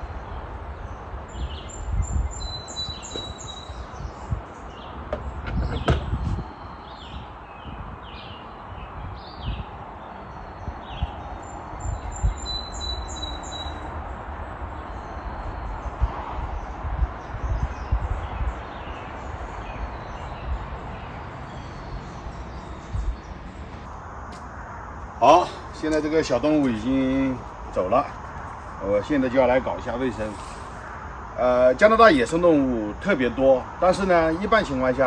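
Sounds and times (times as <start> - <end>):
small birds chirping: 0.0 - 13.9, 25.1 - 35.0
steady outdoor hiss: 0.0 - 35.0
low bumps: 2.7 - 6.5.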